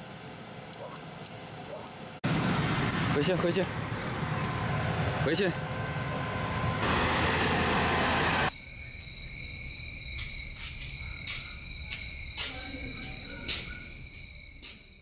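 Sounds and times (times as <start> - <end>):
crickets trilling: 8.5 - 15.0.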